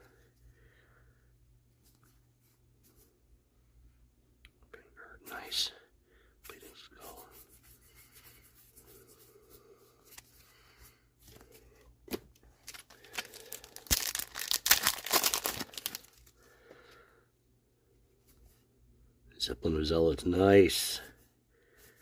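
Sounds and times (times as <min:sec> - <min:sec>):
foil wrapper tearing and crinkling: 0:12.6 - 0:16.3.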